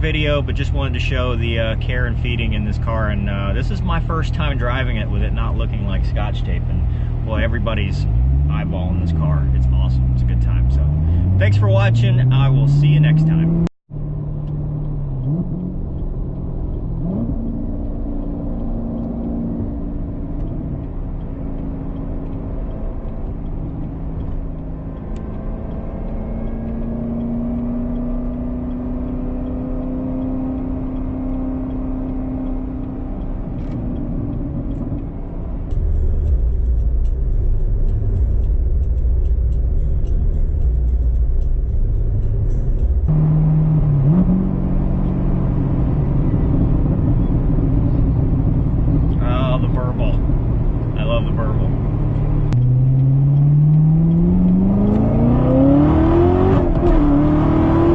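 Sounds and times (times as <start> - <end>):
car engine revving: 0.0 - 57.9
deep low rumble: 32.5 - 57.4.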